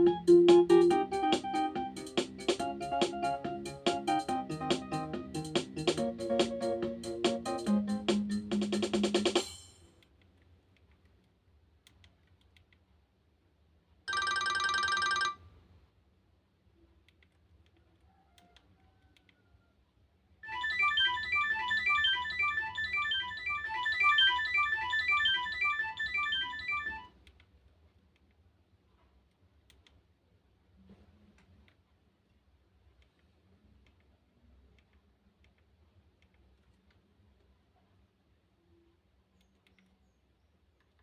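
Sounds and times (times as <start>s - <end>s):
phone ringtone melody: 0.0s - 9.4s, 14.1s - 15.4s, 20.4s - 27.1s
faint clicks: 17.0s - 19.4s, 29.2s - 30.0s, 39.3s - 40.1s.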